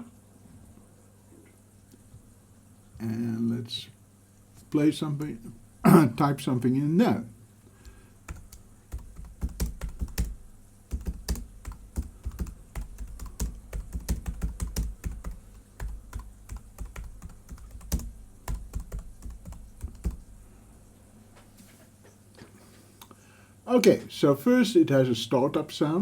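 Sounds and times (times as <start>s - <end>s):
typing on a keyboard: 7.8s - 20.3s.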